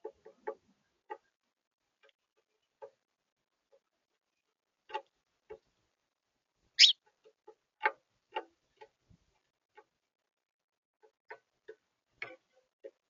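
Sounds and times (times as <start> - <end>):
birds clicking and ticking: 6.8 - 8.9.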